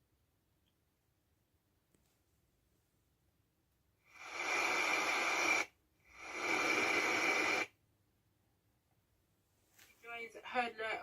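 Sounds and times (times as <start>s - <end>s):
hissing from small speaker: 4.0s - 7.8s.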